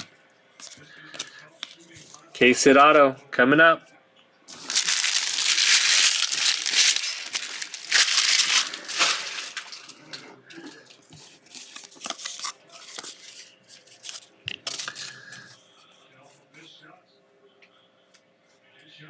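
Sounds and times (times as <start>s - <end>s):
card pack wrapper crinkling and tearing: 0.0s - 2.2s, 4.5s - 15.2s
cards being handled clicking: 11.1s - 15.2s.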